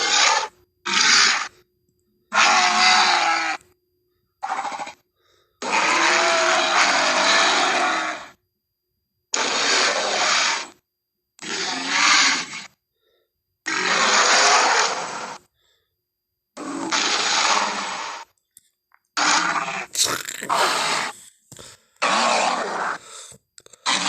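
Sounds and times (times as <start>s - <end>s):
monster roars and growls: 5.6s - 8.3s, 9.4s - 10.7s, 11.4s - 12.7s, 13.7s - 15.4s, 16.6s - 18.3s, 19.2s - 21.2s, 22.0s - 23.0s, 23.8s - 24.0s.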